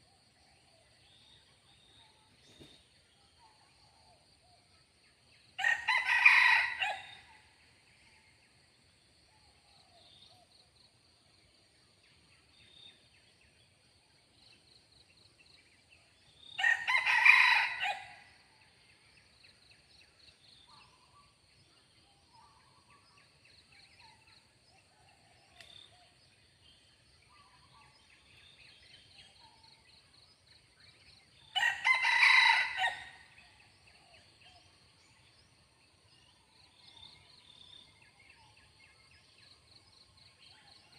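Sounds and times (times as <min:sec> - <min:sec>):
rooster crowing: 0:05.6 - 0:07.2, 0:16.6 - 0:18.2, 0:31.6 - 0:33.2.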